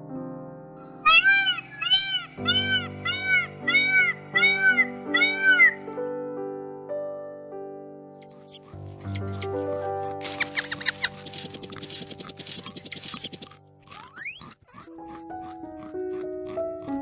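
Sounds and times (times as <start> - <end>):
kitten meowing: 1.1 - 5.8, 8.2 - 9.6, 10.2 - 13.5
soft background music: 14.9 - 17.0.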